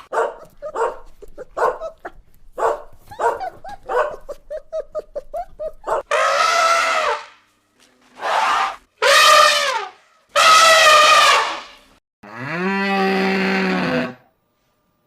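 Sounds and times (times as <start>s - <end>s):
high animal calls: 3.2s - 7.4s, 8.2s - 11.8s
cow mooing: 12.2s - 14.3s.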